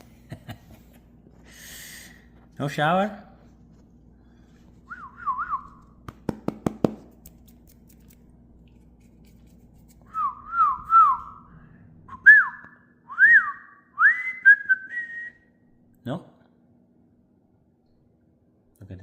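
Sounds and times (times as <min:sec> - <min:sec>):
man whistling calls: 0:04.9 - 0:05.8, 0:10.1 - 0:11.5, 0:12.1 - 0:15.5.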